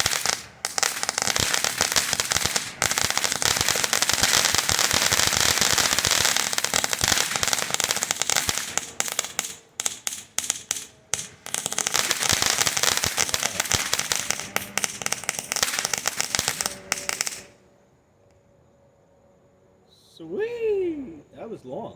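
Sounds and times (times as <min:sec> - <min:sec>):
firework fountain crackling: 0:00.0 - 0:17.6.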